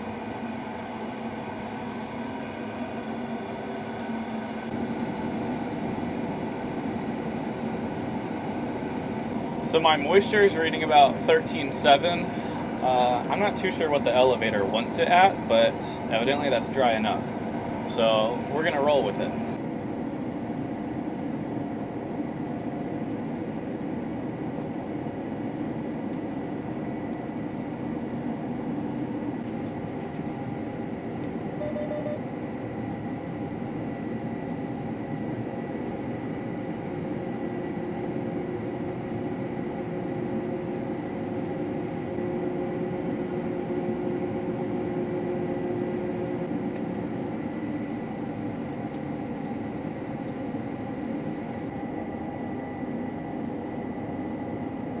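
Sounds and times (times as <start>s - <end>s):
combine harvester drone: 0.0s - 55.0s
faint high whine: 29.4s - 35.2s.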